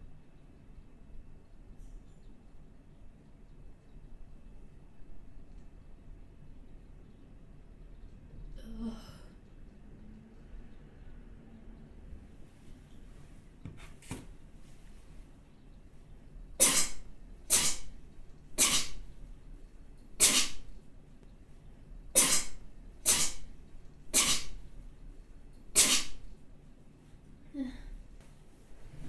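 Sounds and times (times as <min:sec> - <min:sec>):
person sneezing wetly: 0:16.6 - 0:17.9, 0:18.6 - 0:19.0, 0:20.2 - 0:20.7, 0:22.2 - 0:23.5, 0:24.2 - 0:24.6, 0:25.8 - 0:26.2.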